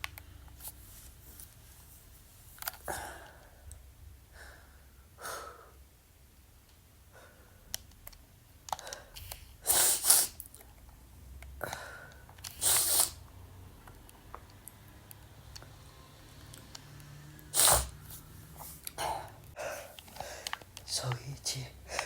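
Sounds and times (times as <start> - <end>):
soft sniff: 9.0 - 10.4, 12.4 - 13.2, 17.5 - 18.8.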